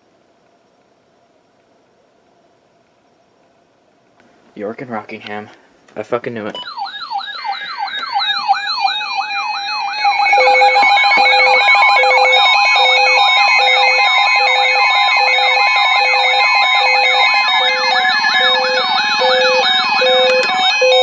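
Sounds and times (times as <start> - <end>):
weather radio alarms sweeping: 6.5 - 21.0
louder sweeping alarm: 6.6 - 21.0.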